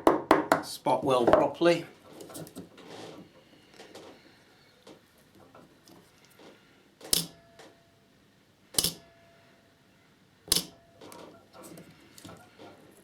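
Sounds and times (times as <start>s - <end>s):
faint steady tone: 7.3s - 11.1s.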